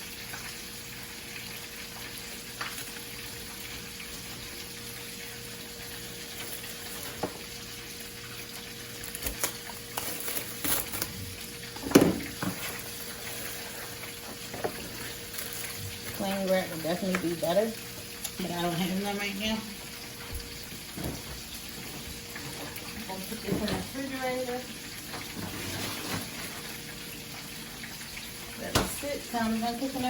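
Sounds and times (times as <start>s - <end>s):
food sizzling in a pan: 0.0s - 30.0s
plastic wrap crinkling: 8.9s - 16.4s.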